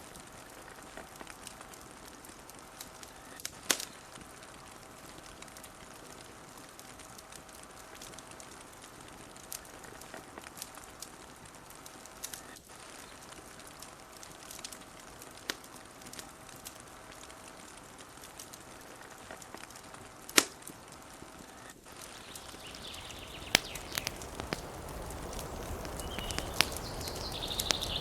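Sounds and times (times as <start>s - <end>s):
wood fire crackling: 0.0s - 28.0s
sharp fire pops: 21.9s - 28.0s.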